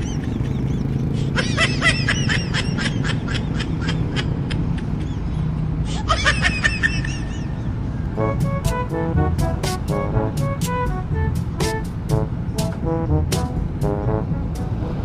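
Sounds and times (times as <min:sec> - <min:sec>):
motorcycle rumble: 0:00.0 - 0:05.9, 0:07.7 - 0:15.0
high-pitched laughter effect: 0:01.2 - 0:05.3, 0:05.9 - 0:07.8.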